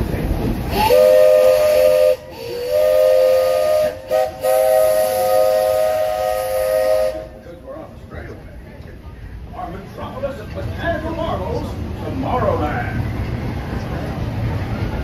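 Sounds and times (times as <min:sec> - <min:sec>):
steam locomotive chime whistle: 0:00.7 - 0:07.4.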